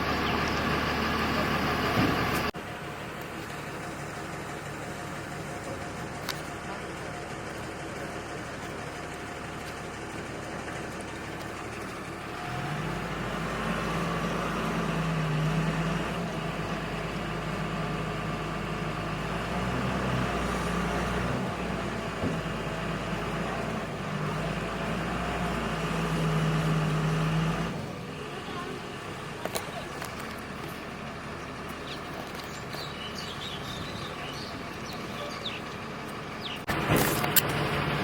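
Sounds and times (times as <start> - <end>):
engine running: 0.0 - 38.0.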